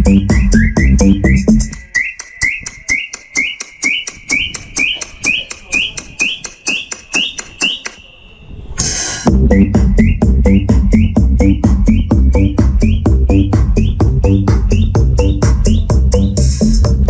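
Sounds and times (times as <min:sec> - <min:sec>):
electronic dance beat: 0:00.0 - 0:08.1, 0:09.2 - 0:17.0
hi-hat ticks: 0:00.0 - 0:08.1
rising synth chirp: 0:09.3 - 0:16.4.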